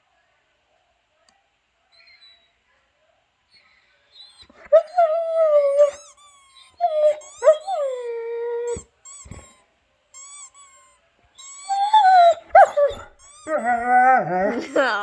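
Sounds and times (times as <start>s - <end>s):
dog whining: 2.0s - 2.6s, 4.1s - 15.0s
short high-pitched squeaks: 8.7s - 9.6s, 10.2s - 13.8s.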